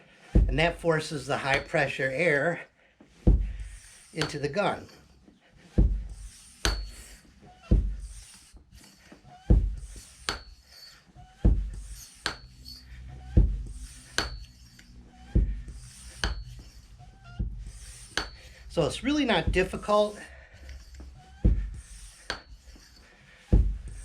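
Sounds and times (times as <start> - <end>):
dull thump of pump: 0.3 - 0.7, 3.1 - 4.4, 5.7 - 10.6, 11.3 - 14.6, 15.2 - 18.8, 19.4 - 24.0
soft airy hiss: 3.5 - 5.1, 17.6 - 24.0.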